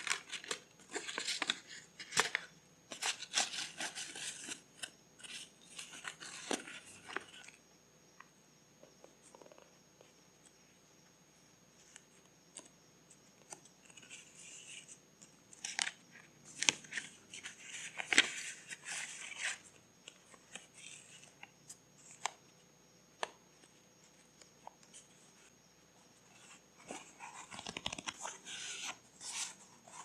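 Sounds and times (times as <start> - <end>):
paper rustling: 0.0 - 7.6, 15.6 - 21.5, 26.3 - 30.0.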